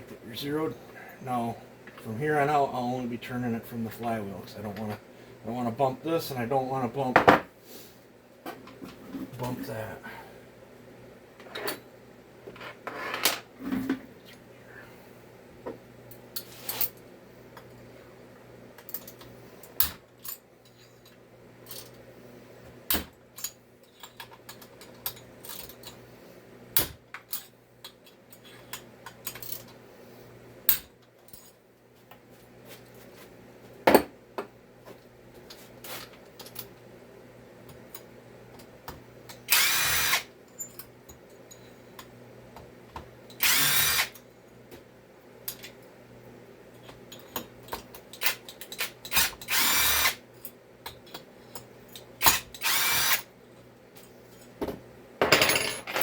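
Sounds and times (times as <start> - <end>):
tools and metal parts clicking: 27.2 - 29.7, 46.8 - 50.0
power tool running: 39.5 - 40.2, 43.4 - 44.1, 52.6 - 53.2.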